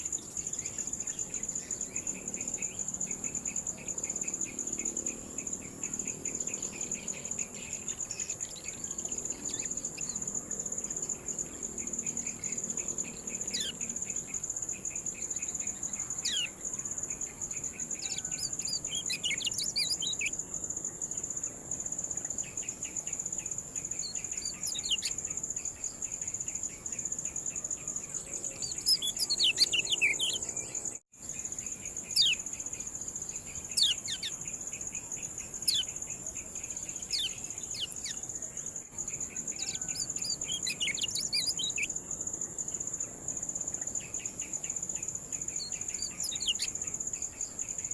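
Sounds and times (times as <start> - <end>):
high insect trill: 0.0 - 47.9.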